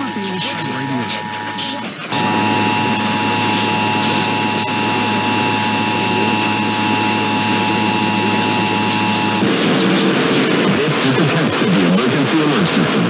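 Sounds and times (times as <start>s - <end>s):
two-tone attention signal: 0.0s - 9.9s
radio static hiss: 0.0s - 13.0s.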